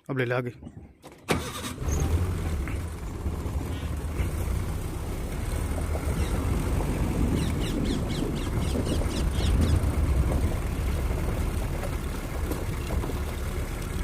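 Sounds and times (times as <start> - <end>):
vehicle engine running: 1.4 - 14.0
bird high sweeping calls: 6.0 - 6.6, 7.3 - 10.0.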